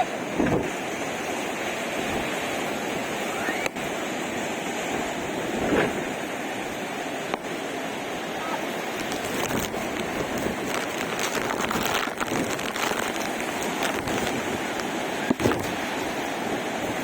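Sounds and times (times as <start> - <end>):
falling water: 0.0 - 17.0.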